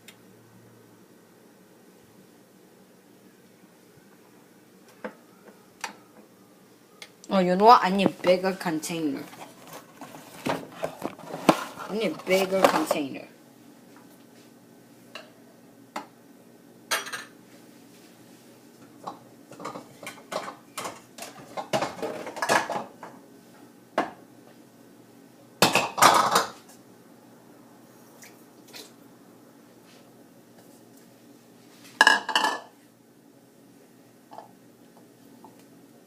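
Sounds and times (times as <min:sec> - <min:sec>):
dishes and utensils clattering: 0:16.9 - 0:17.4, 0:19.1 - 0:23.0, 0:25.6 - 0:26.6, 0:32.0 - 0:32.7.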